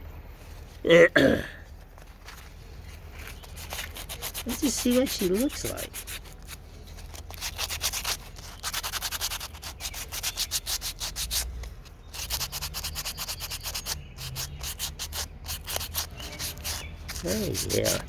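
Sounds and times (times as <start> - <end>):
hand tool scraping wood: 7.1 - 18.0.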